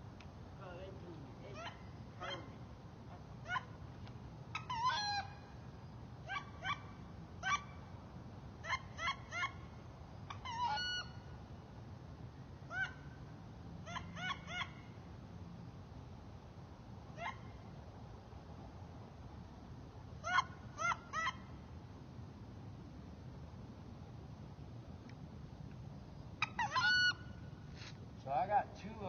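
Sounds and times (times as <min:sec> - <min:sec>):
duck whistled squeals: 0:10.4 - 0:11.2, 0:26.4 - 0:27.4.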